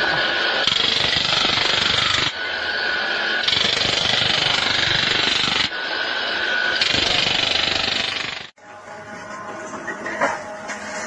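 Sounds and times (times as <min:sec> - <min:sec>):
power tool hammering: 0:00.0 - 0:08.6.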